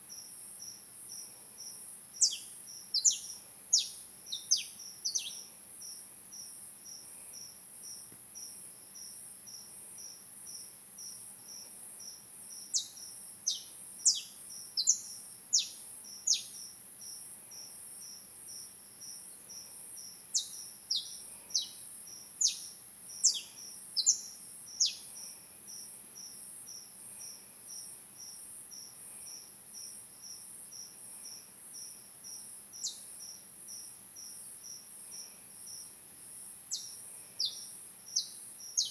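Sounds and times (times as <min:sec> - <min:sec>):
cricket chirping: 0:00.0 - 0:38.9
high insect hiss: 0:00.0 - 0:38.9
sharp bird chirps: 0:02.2 - 0:05.5, 0:12.7 - 0:16.7, 0:20.4 - 0:21.8, 0:22.4 - 0:25.2, 0:32.8 - 0:33.1, 0:36.7 - 0:38.9.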